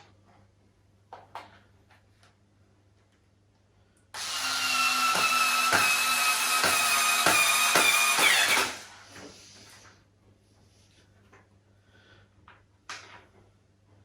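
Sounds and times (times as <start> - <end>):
electric screwdriver motor whining: 4.2 - 9.0.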